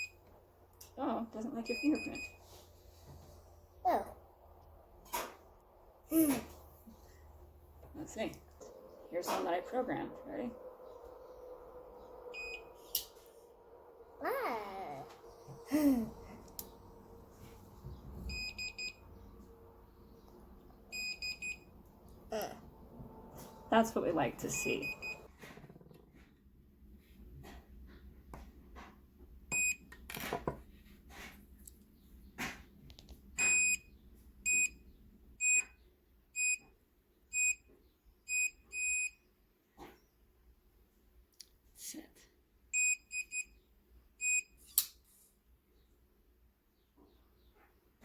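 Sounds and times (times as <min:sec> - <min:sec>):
padlock electronic beeps: 0:18.3 - 0:19.0, 0:20.9 - 0:21.7, 0:24.8 - 0:25.3, 0:29.5 - 0:29.8, 0:33.4 - 0:33.8, 0:34.5 - 0:34.8, 0:36.4 - 0:36.6, 0:38.3 - 0:39.2, 0:42.8 - 0:43.6, 0:44.2 - 0:44.6.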